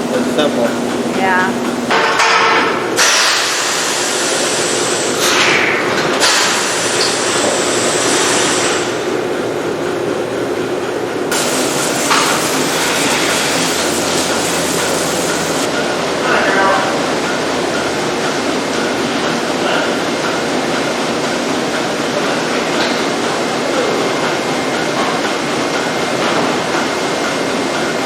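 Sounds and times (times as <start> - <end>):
milking machine hum: 0.0 - 28.0
hiss: 3.0 - 9.0, 11.3 - 15.7.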